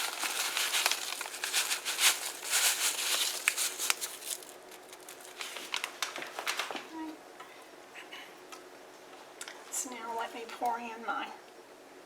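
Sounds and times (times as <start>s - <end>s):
stuffing crackling and rustling: 0.0s - 6.9s.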